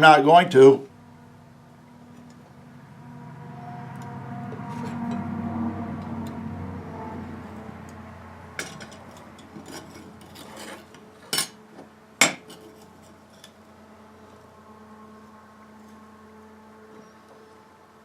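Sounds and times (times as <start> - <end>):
low hum: 0.8 - 11.2.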